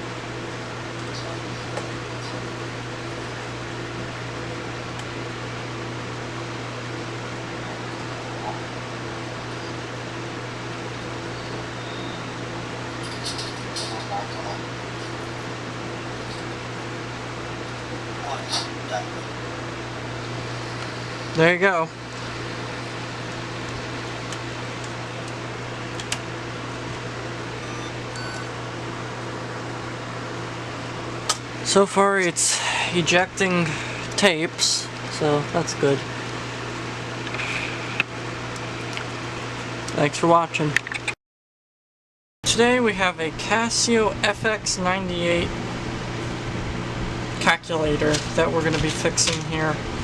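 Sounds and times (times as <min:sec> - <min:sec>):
motor humming and whirring: 0:00.0 - 0:39.2.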